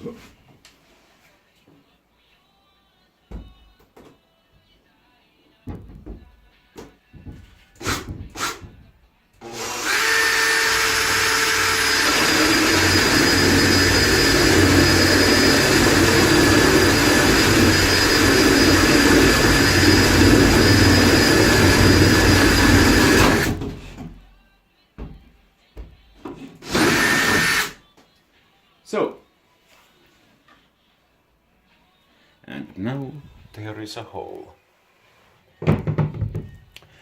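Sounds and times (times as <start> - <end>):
power drill boring a hole: 9.4 - 23.6, 26.6 - 27.8.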